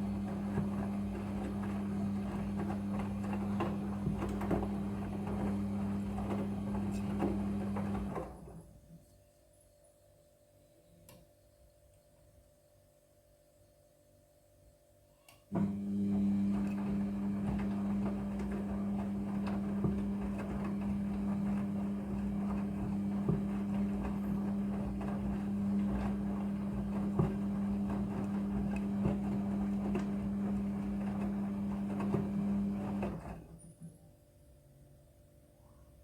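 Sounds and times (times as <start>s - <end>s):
machine hum: 15.5s - 33.1s.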